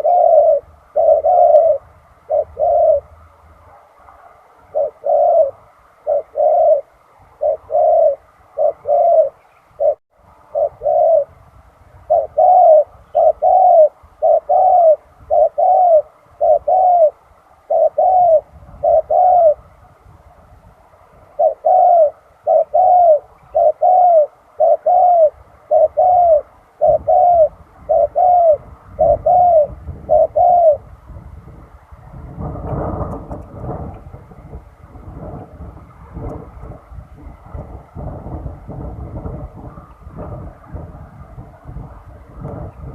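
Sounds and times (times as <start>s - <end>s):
dove cooing: 0.0s - 19.8s, 21.0s - 42.9s
low rumbling noise: 26.3s - 42.9s.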